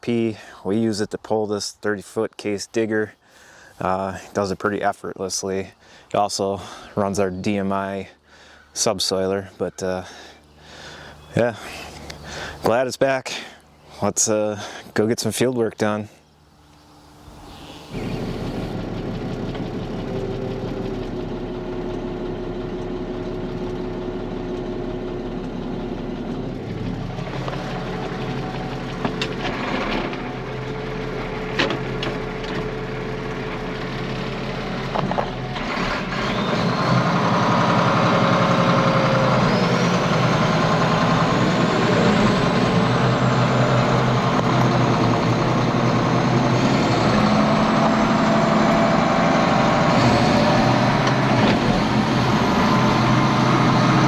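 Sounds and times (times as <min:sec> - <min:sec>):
tractor diesel engine: 0:03.4 - 0:15.1, 0:16.5 - 0:54.0
high whine rising in pitch: 0:16.6 - 0:21.4.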